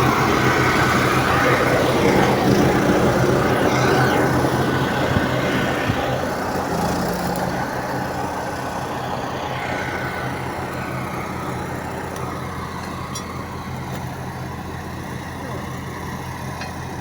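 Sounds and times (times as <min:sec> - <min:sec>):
engine humming steadily: 0:00.0 - 0:17.0.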